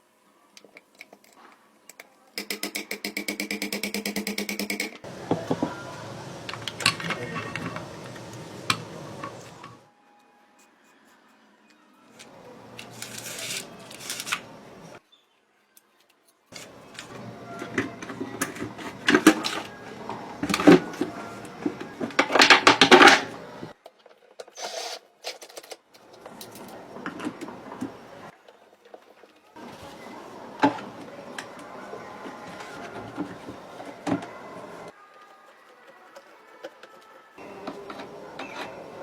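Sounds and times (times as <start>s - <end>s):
fan parts clicking and rattling: 2.4s - 9.8s, 16.6s - 23.7s, 25.5s - 28.3s.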